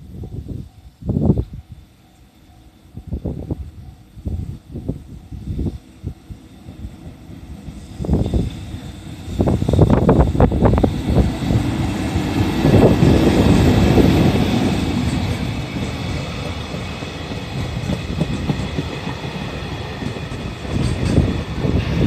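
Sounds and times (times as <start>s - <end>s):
rumble of wheels on rail: 0.0s - 22.0s
train wheels clacking over rail joints: 12.2s - 22.0s.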